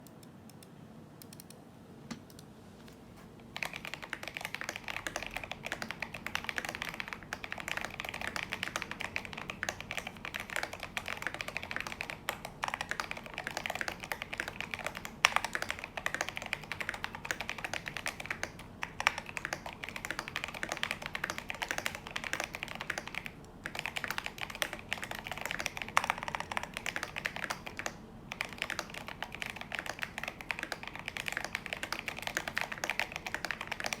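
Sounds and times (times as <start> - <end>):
fast typing on mechanical keyboard: 3.6 - 34.0.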